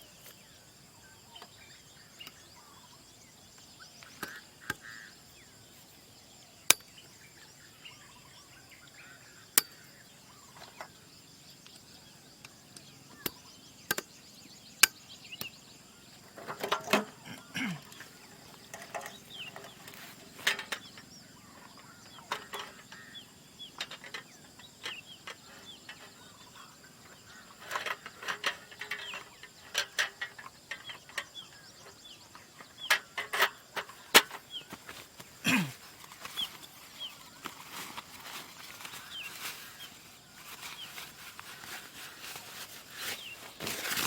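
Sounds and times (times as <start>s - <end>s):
small birds chirping: 0.0s - 44.0s.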